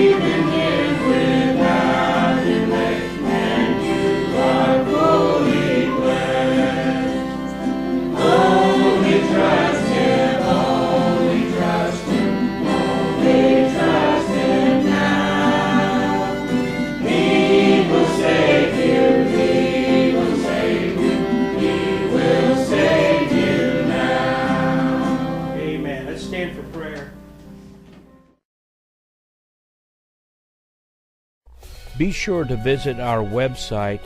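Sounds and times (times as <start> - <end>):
choir singing a hymn: 0.0 - 26.0
instrumental accompaniment: 0.0 - 28.2, 31.5 - 34.0.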